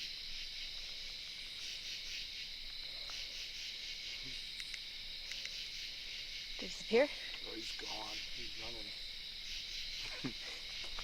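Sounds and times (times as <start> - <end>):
crickets trilling: 0.0 - 11.0.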